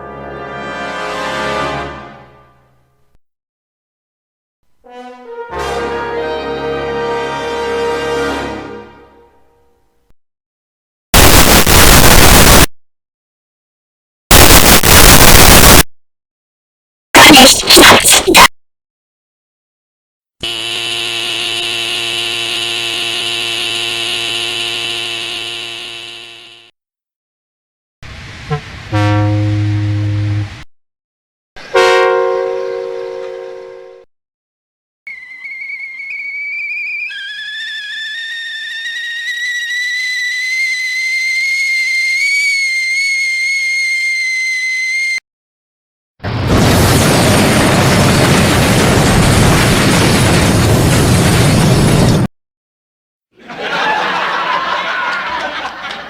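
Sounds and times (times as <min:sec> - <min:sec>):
loud burst of noise: 0:11.2 - 0:12.7, 0:14.3 - 0:15.9, 0:17.2 - 0:18.5, 0:46.2 - 0:52.3
harsh buzzing tone: 0:14.3 - 0:15.8, 0:20.4 - 0:26.7
high steady whistle tone: 0:35.1 - 0:45.2.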